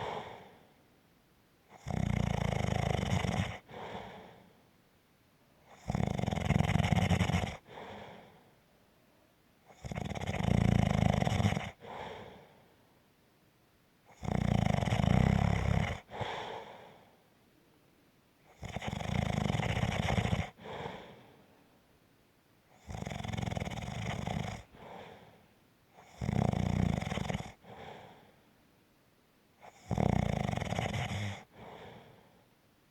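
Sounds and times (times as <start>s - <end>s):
soft breath out: 0.0s - 0.8s, 3.6s - 4.6s, 7.6s - 8.7s, 11.8s - 12.9s, 16.1s - 17.3s, 20.5s - 21.8s, 24.6s - 25.5s, 27.6s - 28.6s, 31.4s - 32.5s
loud snoring: 1.7s - 4.2s, 5.7s - 8.0s, 9.7s - 12.4s, 14.1s - 16.6s, 18.5s - 21.1s, 22.7s - 25.2s, 26.0s - 28.2s, 29.6s - 32.1s.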